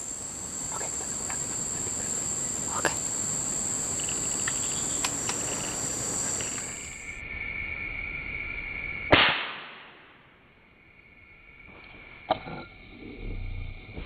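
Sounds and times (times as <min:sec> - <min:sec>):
insects buzzing: 0:00.0 - 0:14.0
air rifle shot: 0:09.1 - 0:10.2.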